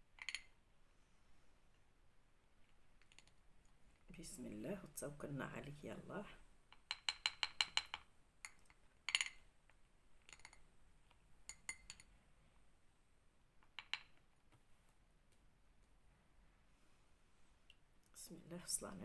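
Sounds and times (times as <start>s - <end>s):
metal spoon clinking on container: 0.2s - 0.5s, 6.9s - 9.4s, 10.2s - 10.6s, 11.5s - 12.1s.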